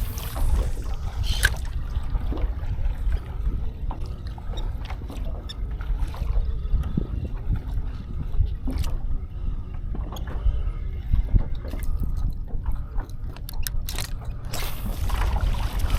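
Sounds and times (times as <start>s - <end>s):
water lapping against kayak hull: 0.0s - 15.9s
wind rumble on microphone: 0.0s - 15.9s.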